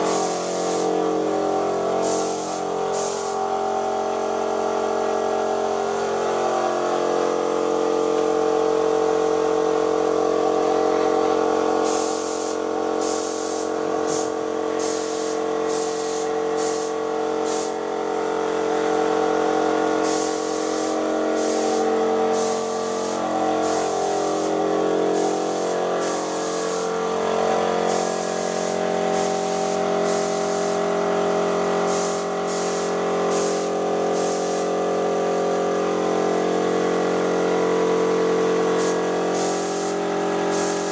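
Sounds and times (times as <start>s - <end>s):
paint spray hissing bursts: 0.0s - 1.1s, 2.0s - 3.4s, 11.8s - 17.8s, 20.0s - 27.0s, 27.7s - 31.0s, 31.8s - 34.8s, 38.7s - 40.9s
paint sprayer motor humming: 0.0s - 4.6s, 9.5s - 40.9s.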